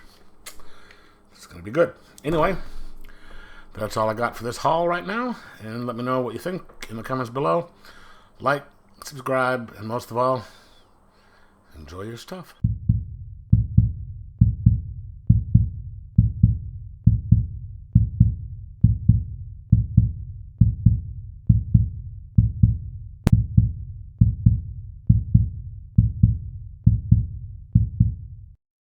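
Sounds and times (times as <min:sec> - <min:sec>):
deep double thump beat: 0:12.6 - 0:28.4.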